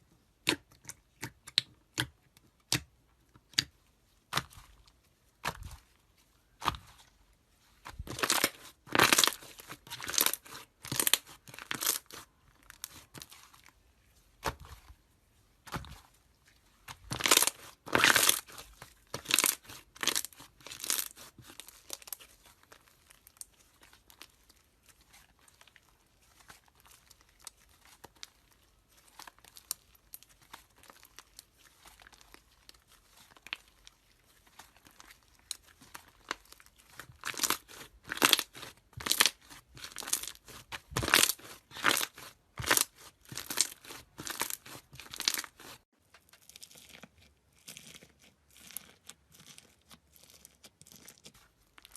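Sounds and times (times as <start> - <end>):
slime crackling and popping: 7.8 - 13.4, 16.9 - 24.6, 26.4 - 45.8.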